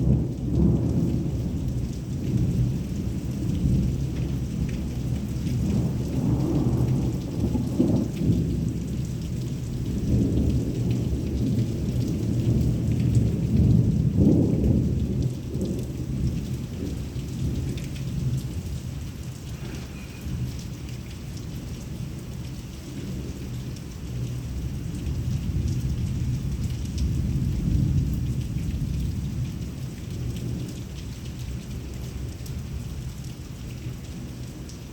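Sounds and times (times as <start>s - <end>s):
thunder rumbling: 0.0s - 22.4s
heavy rain falling: 0.0s - 34.9s.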